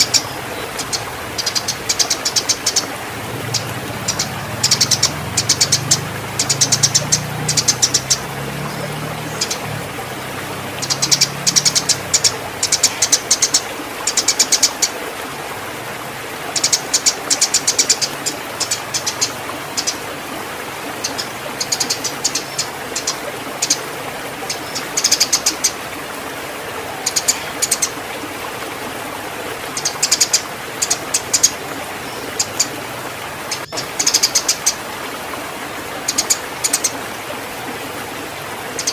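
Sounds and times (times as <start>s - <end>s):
sparrow chirping: 0.0s - 9.7s, 10.8s - 14.8s, 16.6s - 20.0s.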